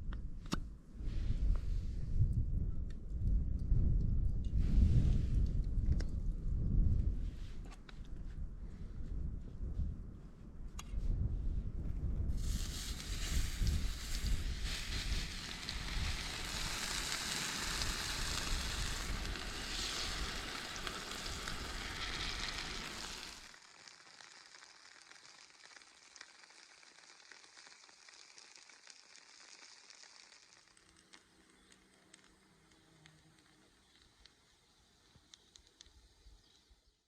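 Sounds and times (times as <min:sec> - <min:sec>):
small pops: 0:12.4 - 0:36.0
pancakes sizzling in oil: 0:12.4 - 0:36.2.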